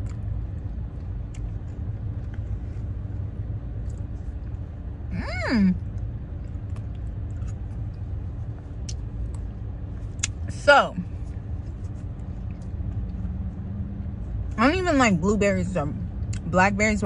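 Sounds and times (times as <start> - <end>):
air conditioning running: 0.0 - 17.0
car idling: 0.0 - 17.0
person humming: 5.1 - 5.8.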